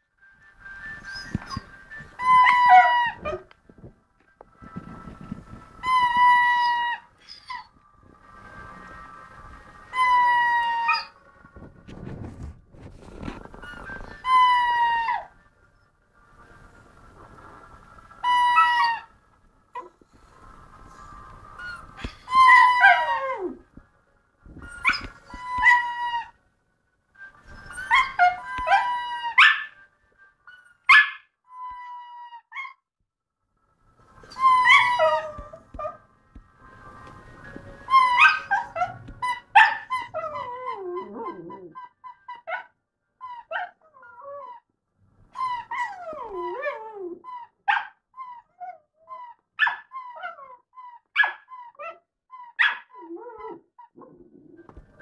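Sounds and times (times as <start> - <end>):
squeaky dog toy squeaking: 1.0 - 3.5, 5.8 - 7.7, 9.9 - 11.2, 13.6 - 15.3, 18.2 - 19.1, 21.6 - 23.6, 24.6 - 26.4, 27.5 - 29.8, 30.5 - 32.8, 34.2 - 36.0, 37.8 - 44.6, 45.3 - 54.2.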